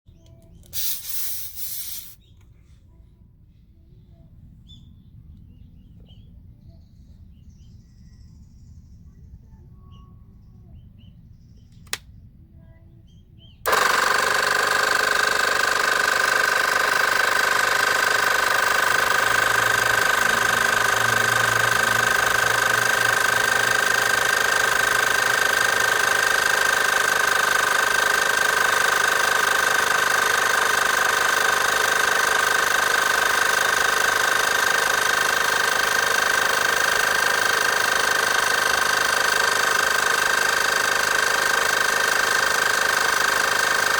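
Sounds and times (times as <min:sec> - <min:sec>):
air compressor running with whine: 0:00.1 - 0:02.8, 0:13.6 - 0:43.9
sharp click: 0:11.7 - 0:12.1.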